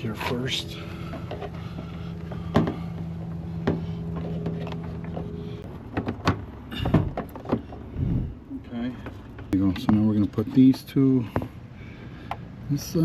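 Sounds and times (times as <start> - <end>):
steady low hum: 0.0 - 13.0.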